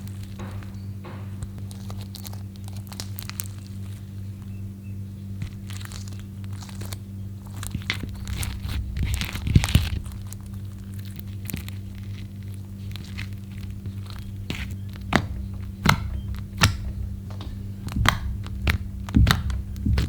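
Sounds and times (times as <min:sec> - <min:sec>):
low steady hum: 0:00.0 - 0:20.0
slime squished by hand: 0:05.4 - 0:20.0.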